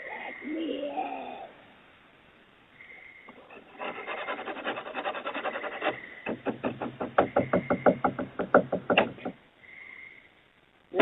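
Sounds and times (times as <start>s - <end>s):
scratching at a door: 3.3s - 9.4s
knocks on a door: 6.2s - 9.4s.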